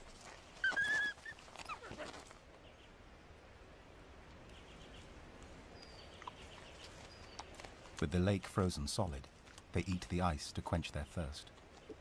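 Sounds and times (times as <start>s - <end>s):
faint high bird chirps: 5.8s - 7.5s.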